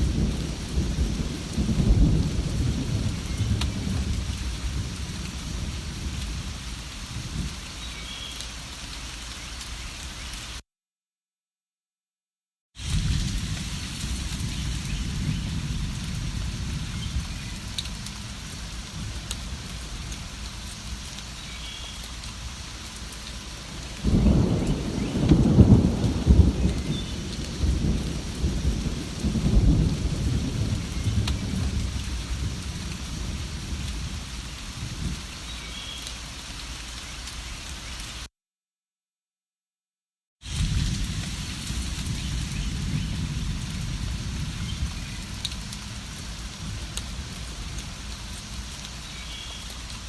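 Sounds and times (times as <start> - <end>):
thunder rumbling: 0.0 - 7.6, 12.8 - 21.0, 23.6 - 35.3, 40.5 - 48.7
steady rain: 0.0 - 10.6, 12.8 - 38.3, 40.4 - 50.0.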